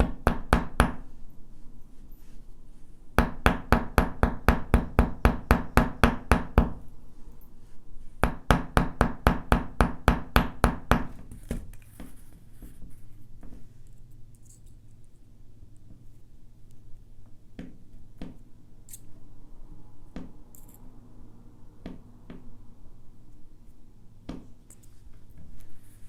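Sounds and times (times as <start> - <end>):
hammer tapping on wire: 0.0 - 1.0, 3.2 - 6.8, 8.2 - 12.2.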